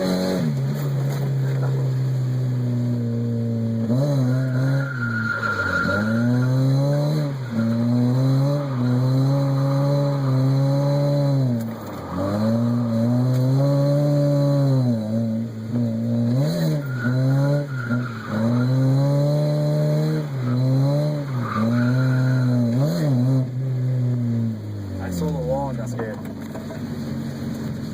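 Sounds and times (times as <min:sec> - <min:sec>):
car engine at high revs: 0:00.0 - 0:27.9
tire squeal: 0:03.9 - 0:23.4.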